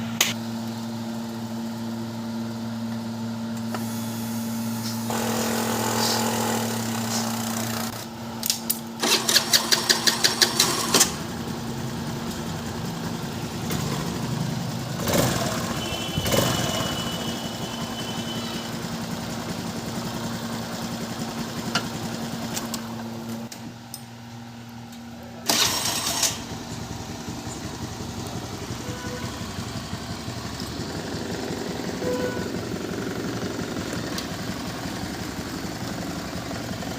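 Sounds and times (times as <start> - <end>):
scooter engine idling: 0.1 - 8.3, 9.0 - 23.5, 25.1 - 36.9
scooter starter rattling: 9.0 - 11.2, 25.5 - 31.2.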